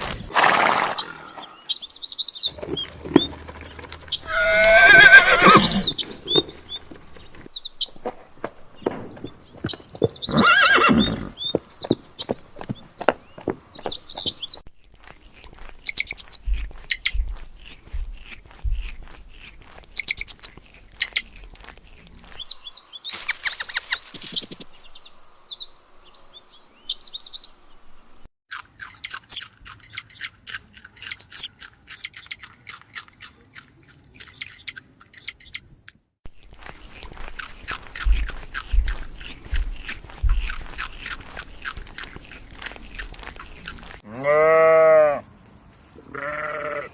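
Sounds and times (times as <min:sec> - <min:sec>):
birds chirping: 0:01.0 - 0:14.7, 0:15.8 - 0:18.8, 0:20.0 - 0:21.4, 0:22.2 - 0:28.3, 0:28.9 - 0:32.5, 0:34.2 - 0:35.7.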